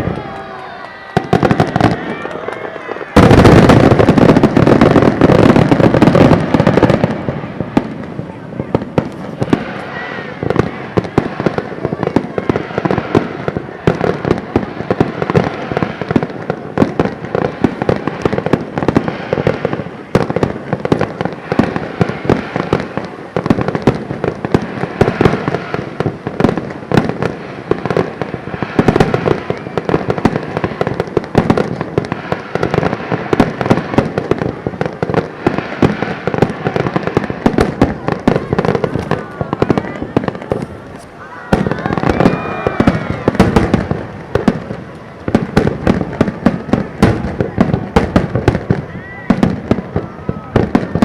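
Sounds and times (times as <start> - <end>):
fireworks bangs and crackles: 0.0 - 51.0.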